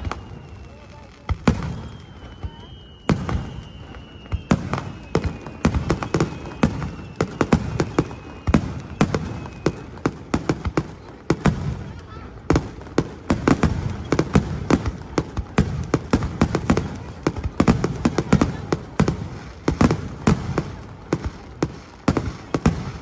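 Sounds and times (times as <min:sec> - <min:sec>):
faint high falling whistle: 0:00.0 - 0:09.9
firework bursts: 0:00.0 - 0:23.0.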